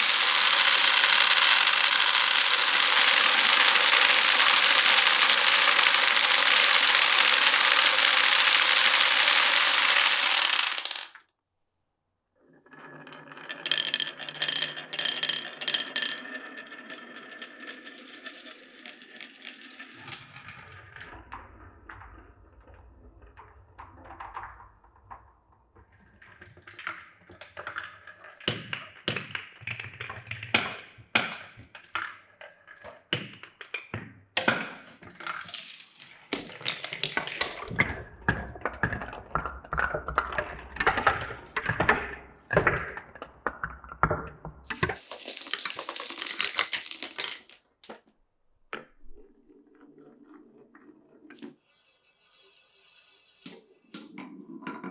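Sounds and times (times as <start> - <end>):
marbles rolling on wooden track: 0.0 - 11.2, 12.6 - 25.4, 34.4 - 48.0, 48.8 - 54.9.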